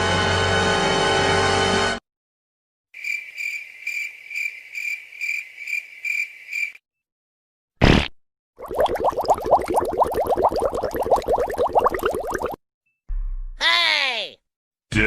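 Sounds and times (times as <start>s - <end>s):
cricket chirping: 3.0s - 6.8s.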